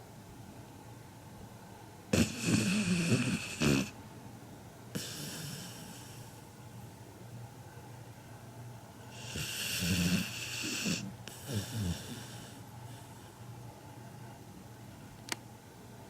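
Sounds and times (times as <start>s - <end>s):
puppy snoring: 2.1s - 4.0s, 4.9s - 6.4s, 9.1s - 13.0s.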